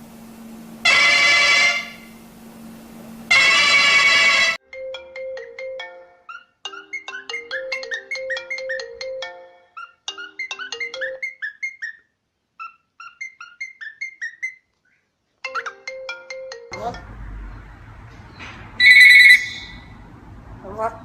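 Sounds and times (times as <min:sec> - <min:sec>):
shrill tone: 0:03.3 - 0:04.6, 0:18.8 - 0:19.9
marimba phone ringtone: 0:04.6 - 0:11.6, 0:15.4 - 0:17.2.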